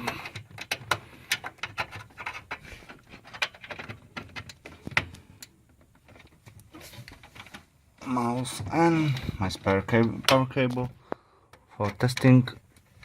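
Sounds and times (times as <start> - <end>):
keyboard and mouse being handled: 0.0 - 7.8.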